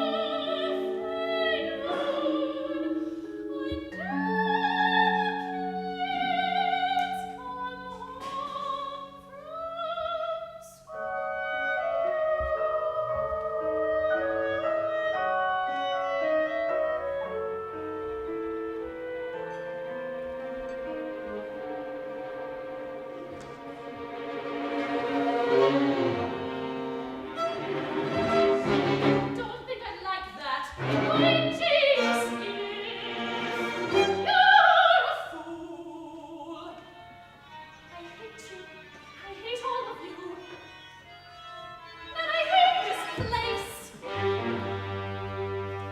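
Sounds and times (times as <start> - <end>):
soprano singing opera: 0.0 - 19.2, 29.3 - 37.2, 42.0 - 44.2
clarinet melody: 10.9 - 24.3, 25.4 - 29.5
piano accompaniment: 10.9 - 29.5.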